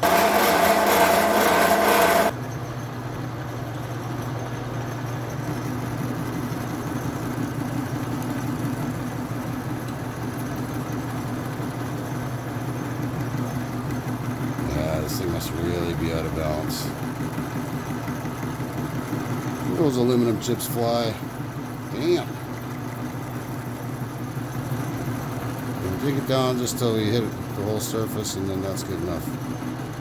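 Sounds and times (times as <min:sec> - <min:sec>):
lathe whining harshly: 0:00.0 - 0:02.4, 0:10.2 - 0:30.0.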